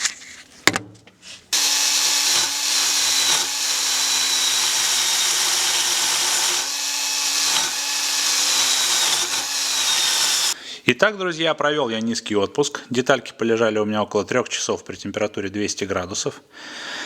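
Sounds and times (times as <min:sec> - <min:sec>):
power tool grinding steel: 0:01.5 - 0:10.6.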